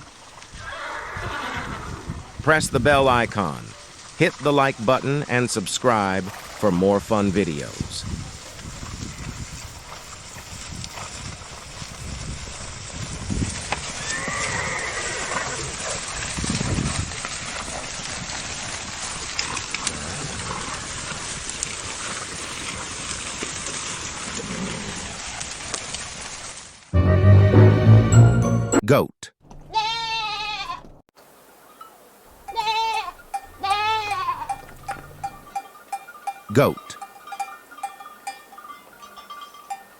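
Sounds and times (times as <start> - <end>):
horse whinnying: 0.6 - 2.2, 13.9 - 16.0, 32.6 - 35.3
hooves clip-clopping: 3.3 - 26.8, 32.4 - 39.9
goat bleating: 29.7 - 30.9, 32.5 - 35.3.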